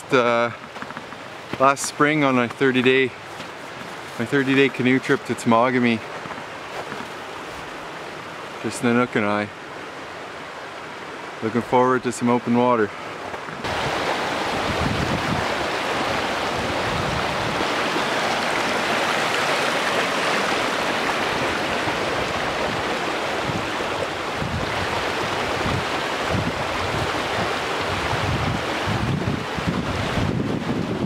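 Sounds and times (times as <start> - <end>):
wind buffeting microphone: 13.4 - 31.0.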